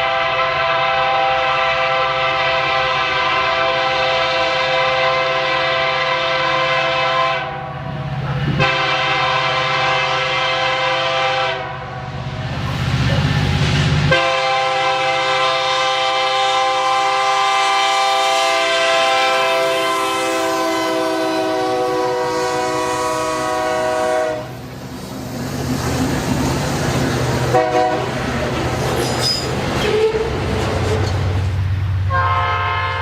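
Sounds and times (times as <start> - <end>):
train horn blast: 0.0 - 12.1, 14.1 - 24.6, 27.5 - 28.2, 32.1 - 33.0
train rumbling on rails: 0.0 - 33.0.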